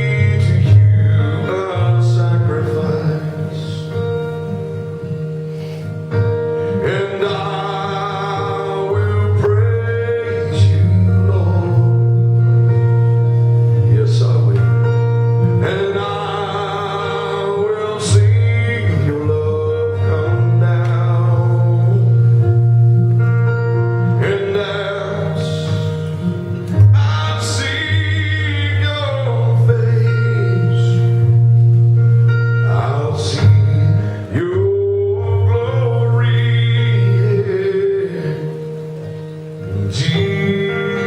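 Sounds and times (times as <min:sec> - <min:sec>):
gospel backing track: 0:00.0 - 0:41.0
people singing: 0:06.8 - 0:12.0, 0:15.6 - 0:22.1.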